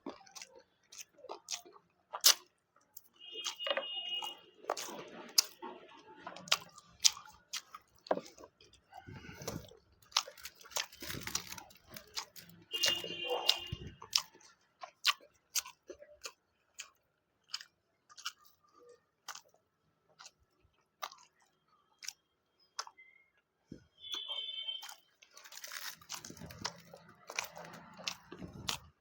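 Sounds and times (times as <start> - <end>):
person chewing with mouth clicks: 0.0 - 23.3, 24.1 - 29.0.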